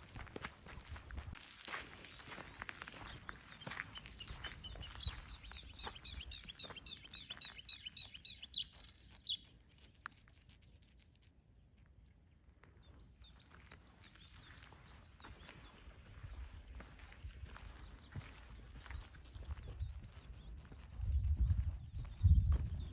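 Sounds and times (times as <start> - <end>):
footsteps clicking on path: 0.0 - 11.0, 11.8 - 22.9
songbird singing: 1.9 - 10.1, 12.8 - 16.9.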